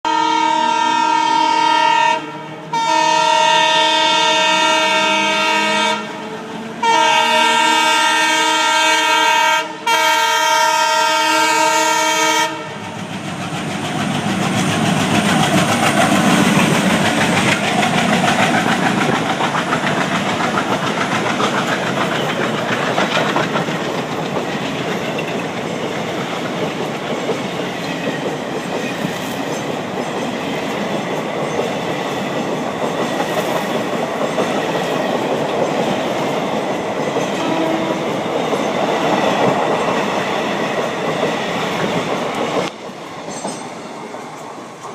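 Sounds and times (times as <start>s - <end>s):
locomotive air horn blasts: 0.0s - 12.9s, 37.4s - 38.0s
train passing with rail clatter: 0.1s - 44.9s.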